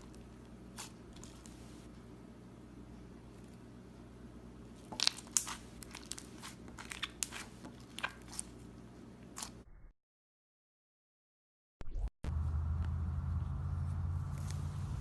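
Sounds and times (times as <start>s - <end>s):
slime crackling and clicking: 4.9s - 8.4s
low hum: 12.3s - 15.0s.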